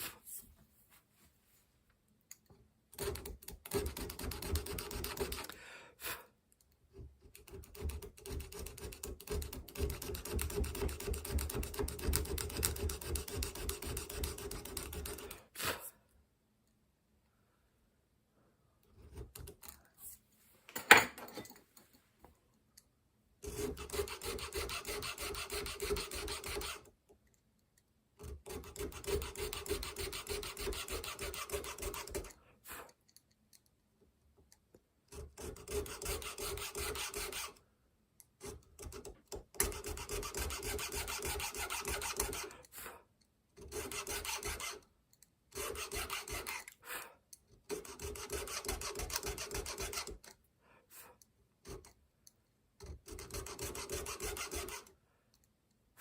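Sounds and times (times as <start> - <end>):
hand tool scraping: 23.4 - 26.9, 35.3 - 37.6, 39.6 - 43.0, 43.6 - 44.8, 45.5 - 50.3, 53.0 - 54.9.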